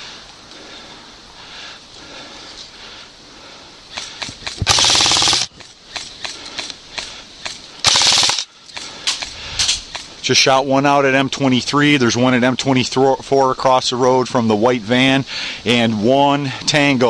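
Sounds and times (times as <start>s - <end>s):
airsoft guns firing: 4.0s - 6.1s, 7.8s - 8.9s.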